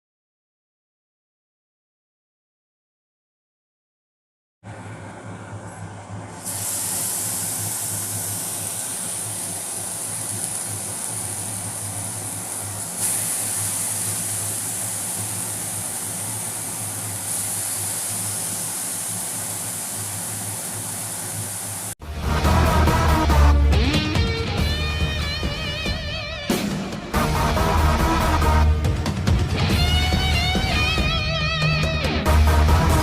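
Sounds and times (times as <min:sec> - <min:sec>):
fish frying in hot oil: 0:06.4 - 0:22.0
guitar music: 0:22.0 - 0:33.0.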